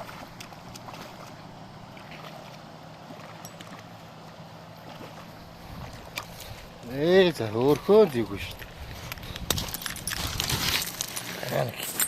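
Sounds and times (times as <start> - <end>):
small clicks and splashes: 0.0 - 4.0
water rushing: 0.0 - 8.6.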